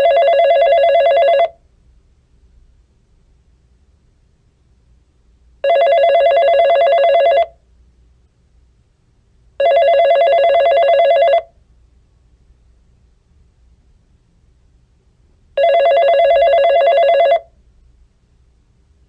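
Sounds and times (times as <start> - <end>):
telephone ringing: 0.0 - 1.6, 5.6 - 7.6, 9.6 - 11.5, 15.6 - 17.5.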